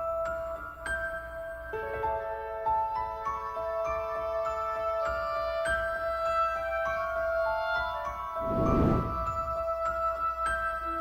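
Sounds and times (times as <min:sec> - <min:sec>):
gentle instrumental music: 0:00.0 - 0:08.3.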